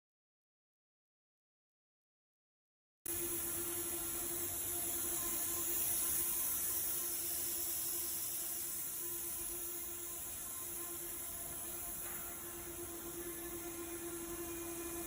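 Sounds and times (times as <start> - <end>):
steady high hiss: 3.1 - 15.0.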